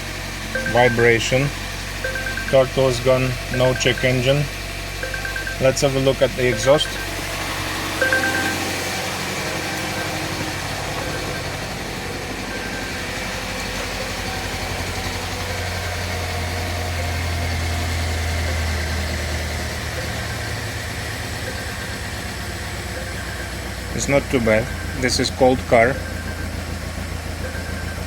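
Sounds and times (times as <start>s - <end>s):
car engine idling rough: 0.0s - 28.0s.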